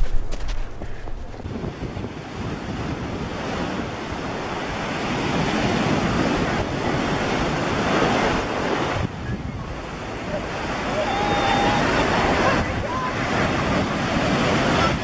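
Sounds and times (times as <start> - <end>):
steady rushing noise: 0.0 - 11.0.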